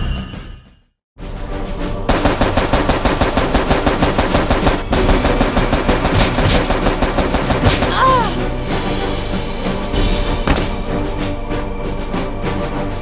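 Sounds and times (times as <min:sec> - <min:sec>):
rapid automatic gunfire: 0:02.1 - 0:08.0.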